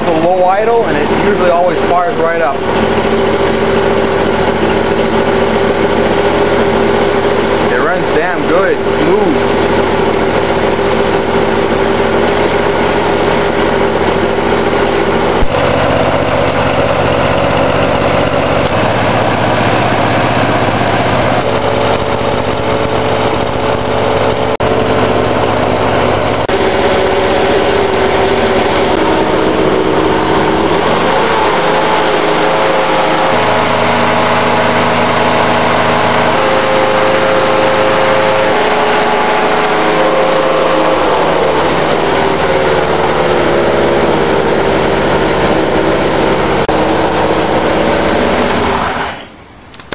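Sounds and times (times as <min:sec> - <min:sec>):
lawn mower engine running: 0:00.0 - 0:49.9
sharp click: 0:49.2 - 0:49.9.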